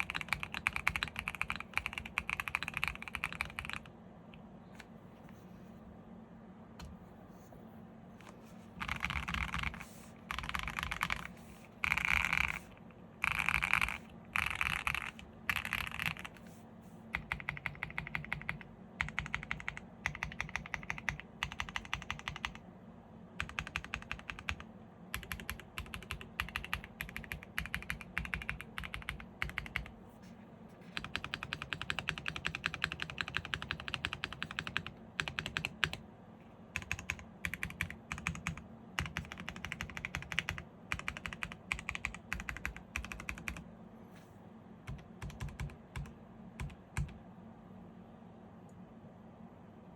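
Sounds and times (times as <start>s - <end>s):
mechanical keyboard typing: 0.0s - 3.9s, 8.8s - 16.5s, 17.1s - 22.6s, 23.4s - 30.0s, 30.9s - 36.0s, 36.7s - 43.6s, 44.8s - 47.2s.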